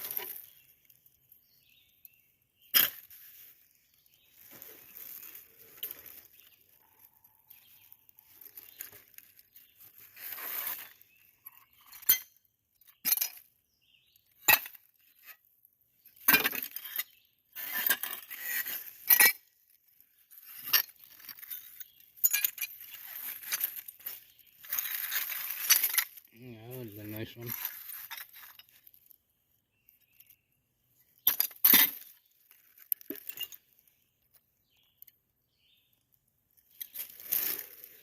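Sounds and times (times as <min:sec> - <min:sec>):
rustling: 0:02.7 - 0:11.2, 0:20.3 - 0:29.2, 0:36.6 - 0:38.0
glass bottles clinking and scraping: 0:10.2 - 0:12.4, 0:16.2 - 0:19.4, 0:20.4 - 0:26.3, 0:27.1 - 0:29.0, 0:32.8 - 0:33.6.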